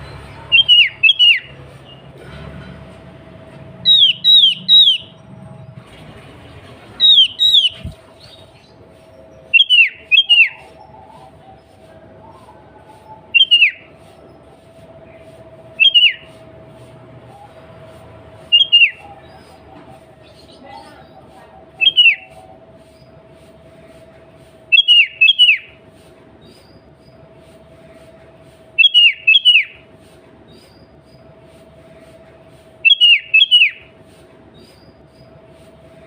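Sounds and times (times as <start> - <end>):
bulbul calling: 0.4 - 1.6, 3.8 - 5.2, 7.0 - 8.5, 9.5 - 11.5, 12.4 - 13.9, 15.8 - 16.3, 18.4 - 20.0, 24.7 - 25.7, 28.8 - 29.8, 32.8 - 33.8.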